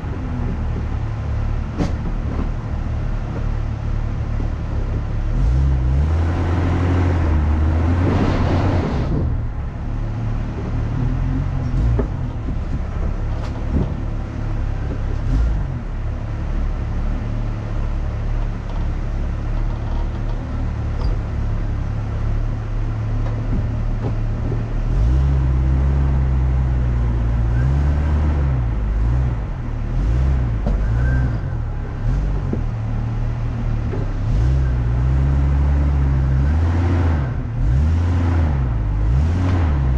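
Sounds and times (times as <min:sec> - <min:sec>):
off-road vehicle engine: 0:00.0 - 0:39.9
knocks and rattles: 0:01.7 - 0:03.7, 0:10.4 - 0:15.8, 0:18.2 - 0:21.9, 0:23.1 - 0:24.9.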